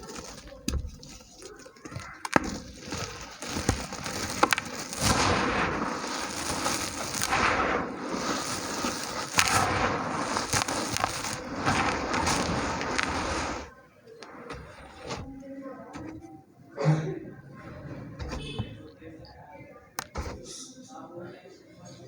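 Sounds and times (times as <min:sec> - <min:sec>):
sharp cracks: 0:00.0 - 0:16.2
dirt chunks crumbling: 0:00.0 - 0:16.3.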